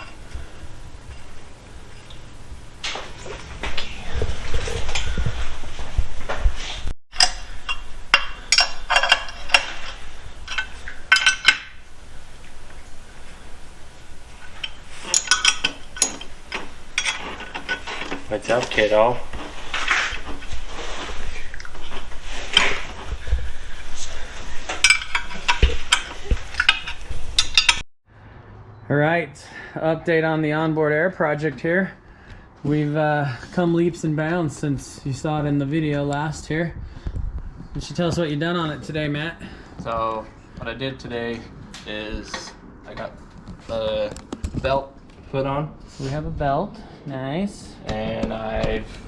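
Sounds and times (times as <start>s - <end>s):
metal parts clinking: 7.2s - 11.8s, 14.4s - 19.1s, 24.6s - 27.8s.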